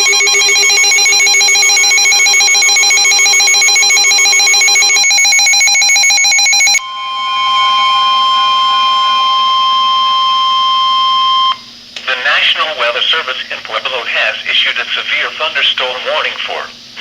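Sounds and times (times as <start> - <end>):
rapidly pulsing electronic alarm: 0.0 - 11.7
steady high alert tone: 0.0 - 11.7.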